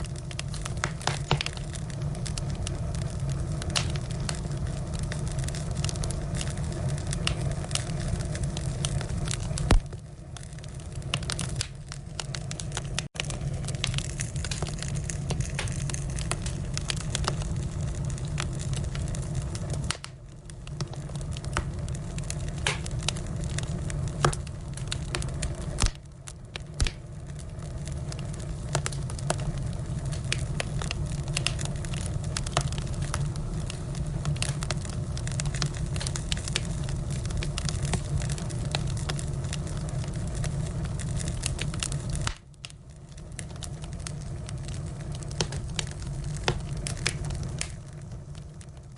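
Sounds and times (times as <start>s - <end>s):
firewood crackling and popping: 0.0s - 48.9s
low fire rumble: 0.0s - 48.9s.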